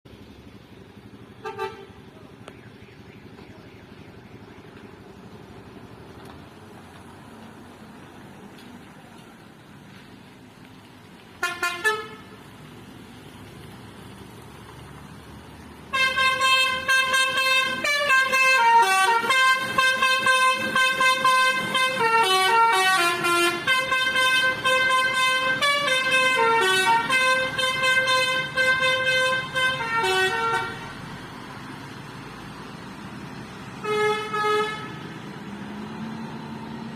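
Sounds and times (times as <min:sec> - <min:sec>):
multi-note bus horn melody: 0:01.4 - 0:02.1, 0:11.4 - 0:12.4, 0:15.9 - 0:31.0, 0:33.8 - 0:35.2.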